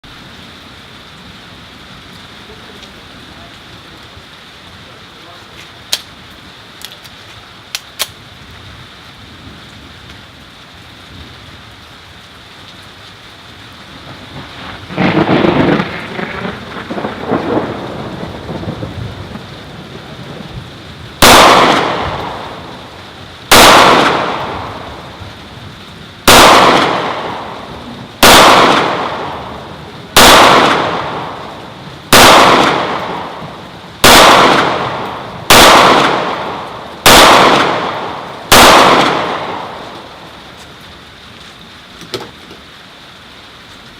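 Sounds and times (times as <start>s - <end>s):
rain hiss: 0.0s - 43.9s
rolling thunder rumble: 13.9s - 40.5s
echoing gunshots: 21.2s - 22.9s, 23.5s - 25.2s, 26.2s - 40.3s.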